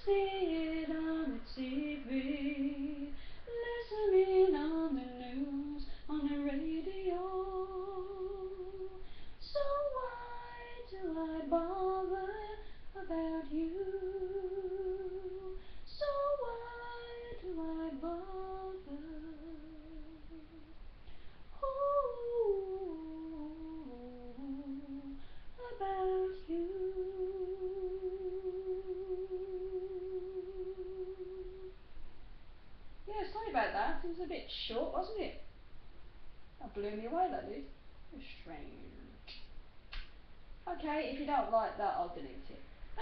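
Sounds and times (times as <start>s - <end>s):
woman humming: 25.9s - 31.8s.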